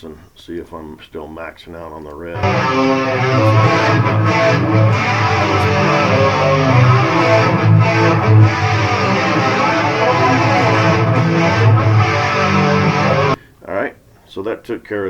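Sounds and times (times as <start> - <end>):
layered electric guitars: 2.4 - 13.4.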